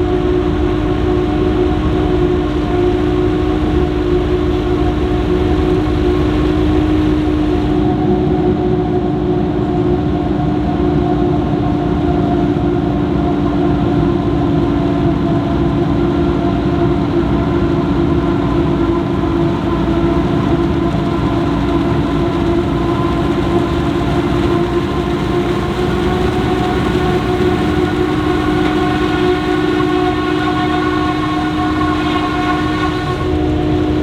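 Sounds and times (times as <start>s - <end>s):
low engine rumble: 0.0s - 9.4s, 12.8s - 34.0s
harvester whine: 12.9s - 34.0s.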